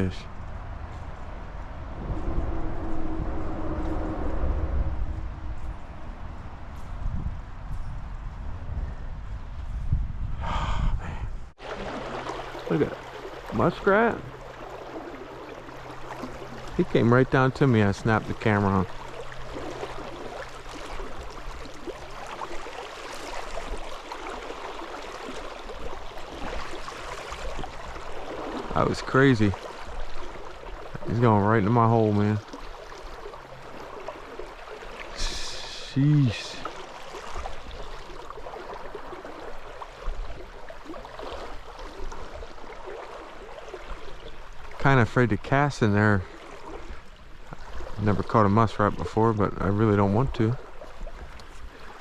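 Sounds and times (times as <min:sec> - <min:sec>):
low rumble: 0:00.3 - 0:07.6
creek water rushing and gurgling: 0:11.6 - 0:52.0.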